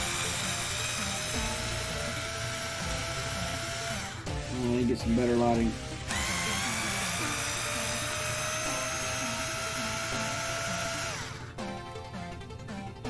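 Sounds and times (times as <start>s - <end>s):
cordless electric screwdriver running: 0.0s - 4.7s, 5.9s - 11.6s.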